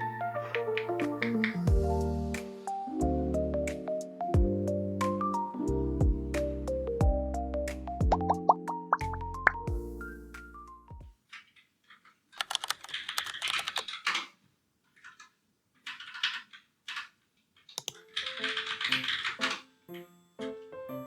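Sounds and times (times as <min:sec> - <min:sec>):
computer keyboard typing: 0:00.0 - 0:01.7, 0:12.4 - 0:14.4, 0:15.0 - 0:19.7
soft background music: 0:00.0 - 0:11.2, 0:17.9 - 0:21.0.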